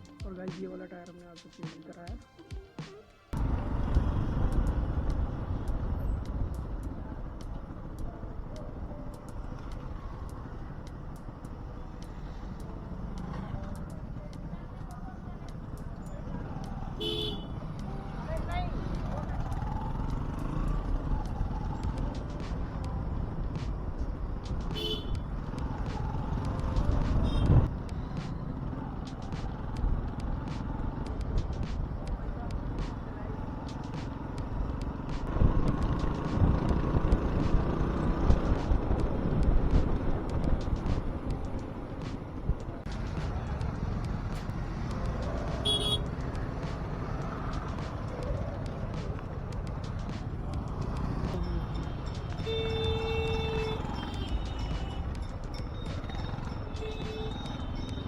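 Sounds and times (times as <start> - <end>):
road and traffic noise: 0.0 - 58.0
vehicle horn beeps: 16.9 - 17.7, 24.8 - 25.3, 27.2 - 27.7, 45.6 - 46.2, 51.8 - 55.2, 55.8 - 58.0.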